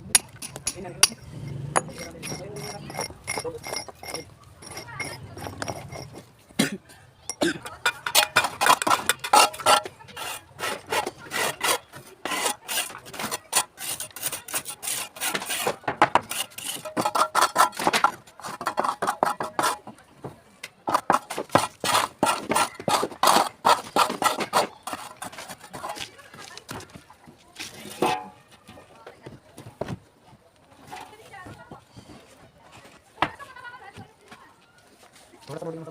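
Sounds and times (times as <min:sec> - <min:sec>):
scraping on gritty material: 0:00.4 - 0:06.6, 0:07.6 - 0:20.0, 0:20.9 - 0:27.0, 0:27.6 - 0:28.4.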